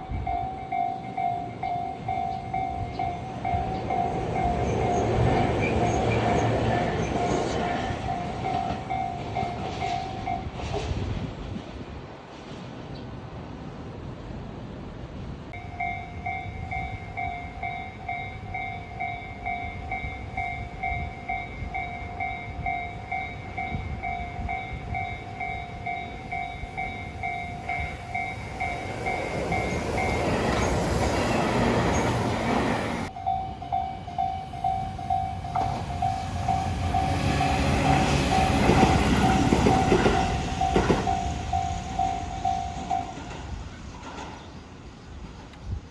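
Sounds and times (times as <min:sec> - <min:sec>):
train wheels clattering over rails: 0:35.6 - 0:44.6.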